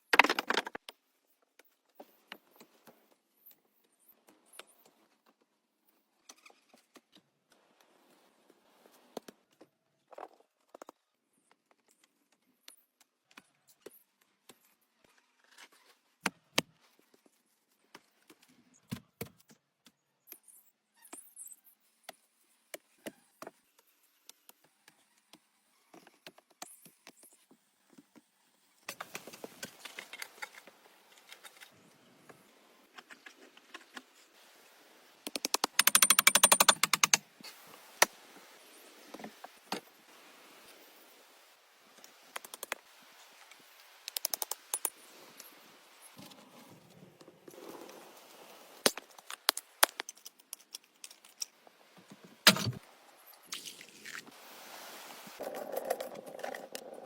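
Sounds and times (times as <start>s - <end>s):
wood knocking and cracking: 0.1s - 0.8s, 52.4s - 52.8s
rapid rattle of clicks: 35.4s - 37.2s.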